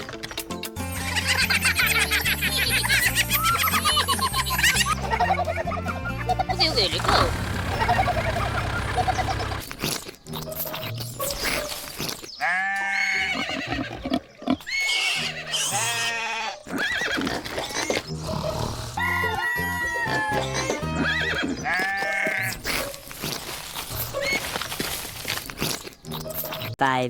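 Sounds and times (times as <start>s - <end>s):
farm animal calls: 6.5s - 9.7s.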